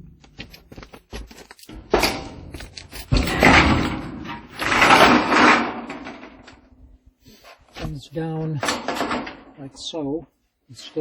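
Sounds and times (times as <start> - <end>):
sheet metal clicks and knocks: 0.0 - 6.8, 8.6 - 9.6
sheet metal rattling and scraping: 0.0 - 9.9.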